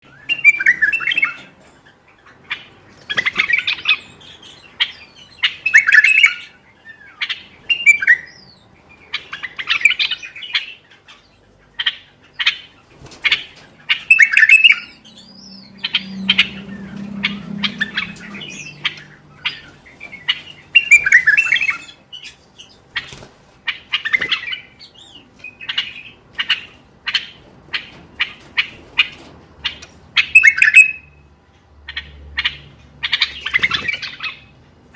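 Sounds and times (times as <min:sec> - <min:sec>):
bulbul singing: 0:00.0 - 0:01.5, 0:03.2 - 0:22.9, 0:30.2 - 0:31.2.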